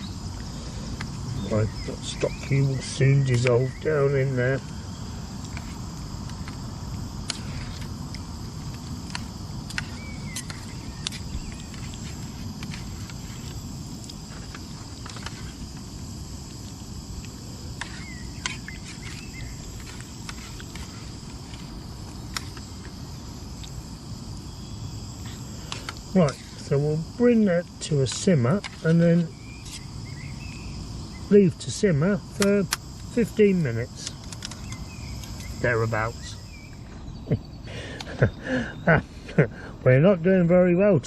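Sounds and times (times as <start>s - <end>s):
insects chirring: 0.0s - 41.0s
bird chirps: 9.7s - 11.8s, 17.9s - 19.6s, 29.2s - 31.3s, 34.5s - 39.0s.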